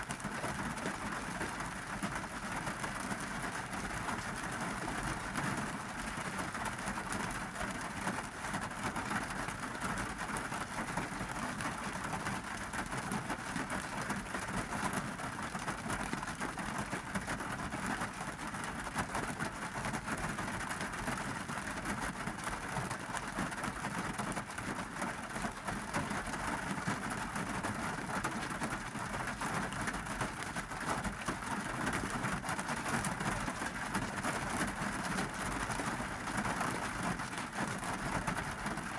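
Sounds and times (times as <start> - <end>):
rain on a car roof: 0.0 - 38.9.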